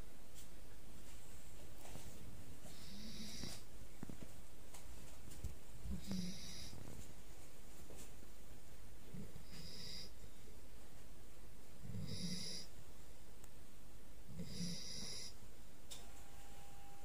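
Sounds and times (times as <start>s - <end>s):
puppy snoring with whistle: 2.7s - 3.6s, 6.0s - 6.8s, 9.2s - 10.2s, 11.8s - 12.7s, 14.3s - 15.4s.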